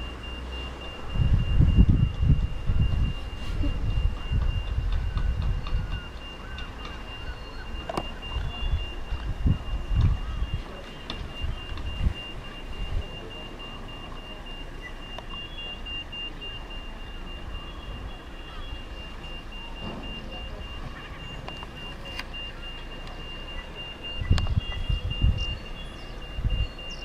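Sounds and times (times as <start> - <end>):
low rumble: 0.0 - 6.3
faint outdoor background noise: 0.0 - 27.0.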